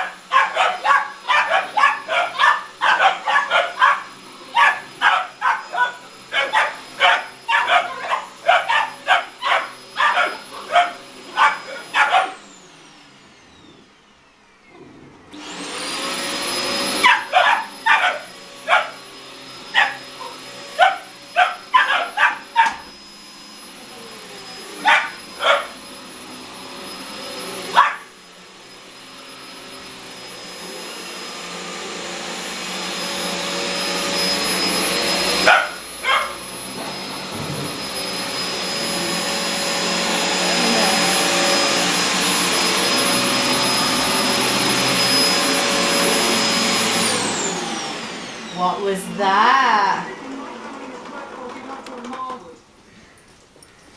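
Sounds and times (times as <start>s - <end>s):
puppies barking: 0.0s - 12.5s, 16.9s - 22.9s, 24.7s - 25.8s, 27.6s - 28.2s, 35.3s - 36.5s
vacuum cleaner running: 0.0s - 52.6s.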